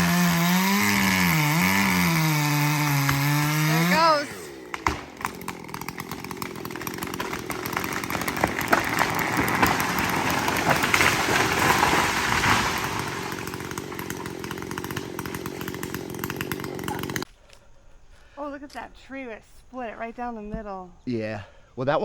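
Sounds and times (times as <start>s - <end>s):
chainsaw cutting wood: 0.0s - 17.3s.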